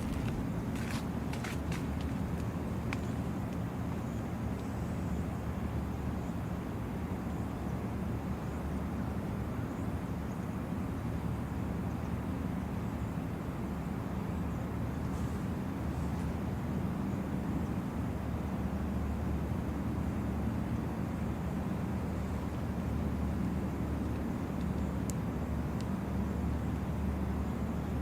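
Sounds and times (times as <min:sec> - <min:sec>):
steady low rumble: 0:00.0 - 0:04.0.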